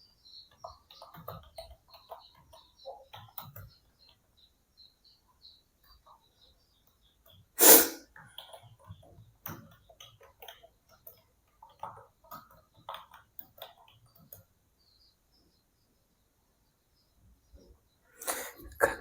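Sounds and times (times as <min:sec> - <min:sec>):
short rush of noise: 0:07.6 - 0:08.0.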